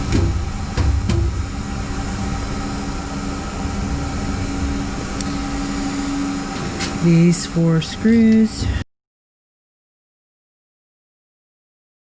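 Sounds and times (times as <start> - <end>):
machinery humming: 0.0 - 8.9.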